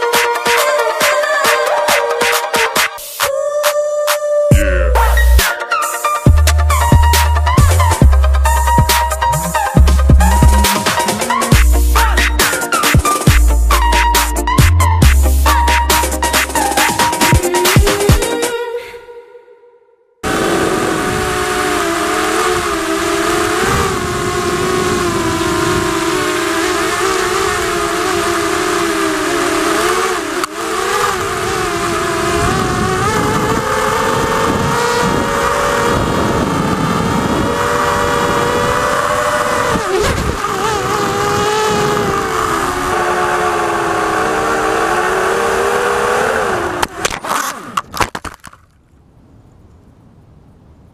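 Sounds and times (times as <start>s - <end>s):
quadcopter motors whining: 20.2s - 47.9s.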